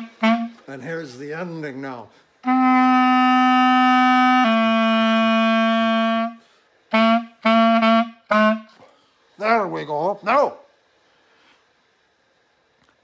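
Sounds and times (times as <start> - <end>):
clarinet playing: 0.0 - 1.2, 2.4 - 8.8.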